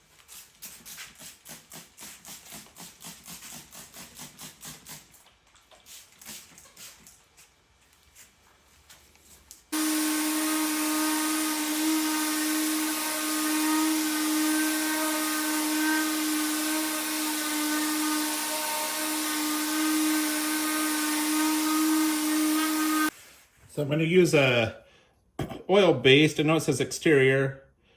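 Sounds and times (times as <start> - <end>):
power tool motor whine: 9.8 - 23.1.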